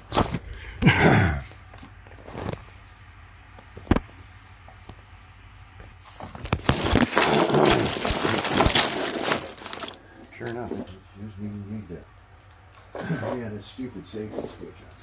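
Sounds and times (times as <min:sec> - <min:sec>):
noisy clatter: 0:06.2 - 0:10.9.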